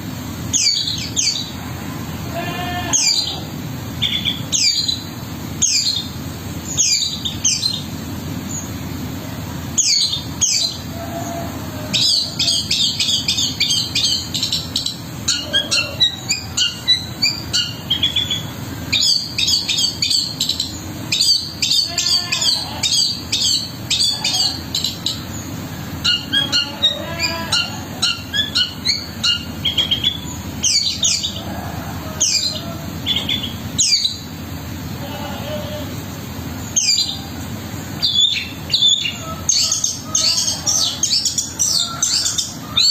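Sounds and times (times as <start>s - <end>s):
steady low hum: 0.0s - 42.9s
bird harsh falling calls: 2.3s - 9.0s, 9.7s - 42.9s
bird rapid varied chattering: 11.9s - 31.5s, 36.0s - 42.9s.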